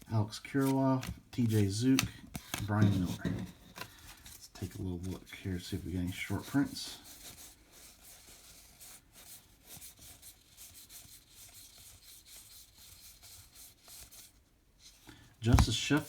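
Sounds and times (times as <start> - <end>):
paper cards rustling: 0.4 - 7.4, 11.0 - 16.0.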